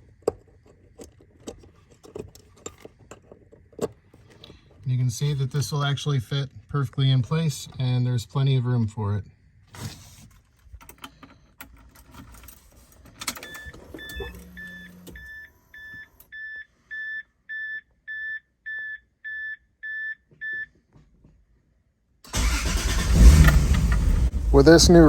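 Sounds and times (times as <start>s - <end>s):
car engine cranking and starting: 10.9s - 16.3s, 22.3s - 25.0s
car warning chime beeping: 13.4s - 20.6s.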